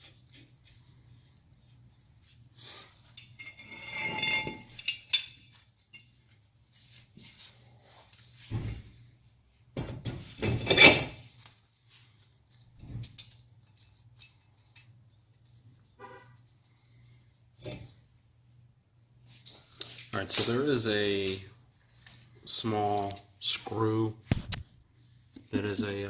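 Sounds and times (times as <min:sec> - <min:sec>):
metal tools clinking and scraping: 0:02.8 - 0:06.4, 0:10.4 - 0:11.3, 0:19.3 - 0:21.5
metallic ring: 0:03.2 - 0:06.2.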